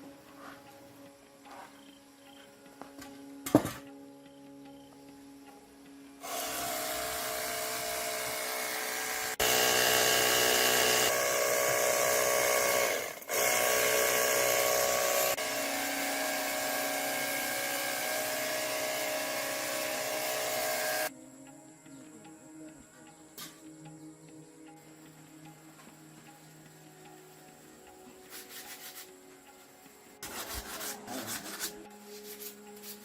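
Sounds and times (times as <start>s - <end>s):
handheld power tool running: 6.2s - 21.1s.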